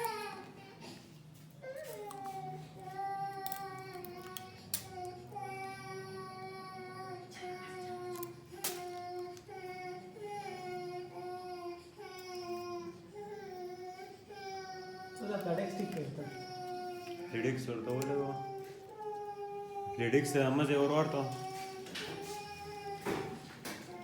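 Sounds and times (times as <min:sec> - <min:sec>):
child crying: 0:00.0 - 0:00.8, 0:01.6 - 0:20.0.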